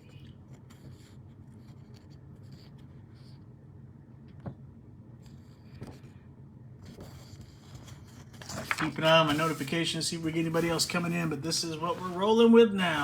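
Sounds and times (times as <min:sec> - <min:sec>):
hands scratching and rustling: 0:08.5 - 0:09.8.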